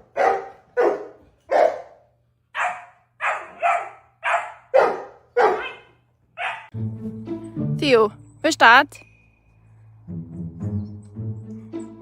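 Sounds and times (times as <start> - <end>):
dog barking: 0.0 - 6.7.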